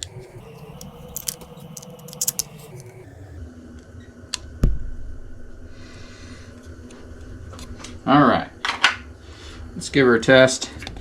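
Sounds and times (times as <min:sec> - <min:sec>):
allen key clicking and scraping: 0:00.6 - 0:02.7.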